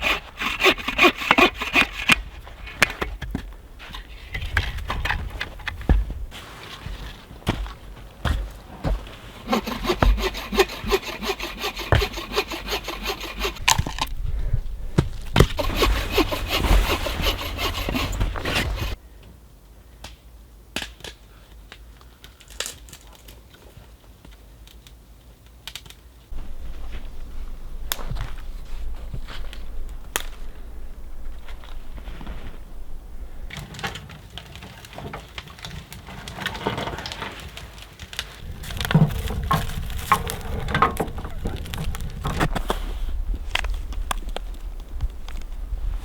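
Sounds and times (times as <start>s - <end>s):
hand saw cutting wood: 0.0s - 2.8s, 9.2s - 13.6s, 15.4s - 19.0s, 38.4s - 42.8s.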